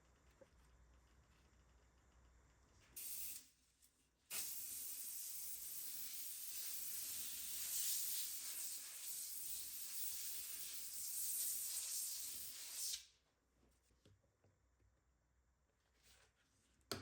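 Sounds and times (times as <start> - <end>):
spray hissing: 3.0 - 3.4, 4.3 - 13.0.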